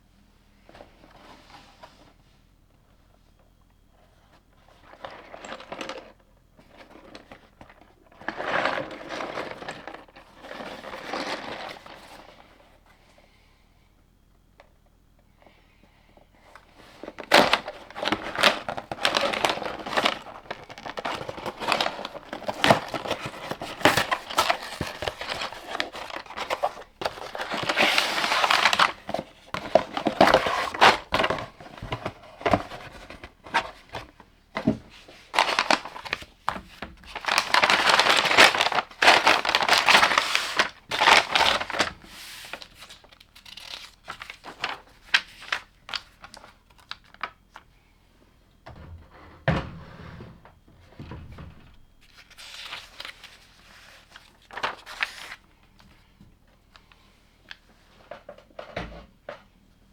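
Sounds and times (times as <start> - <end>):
plastic packaging crinkling and tearing: 17.1 - 34.1, 35.3 - 47.6, 52.0 - 55.5.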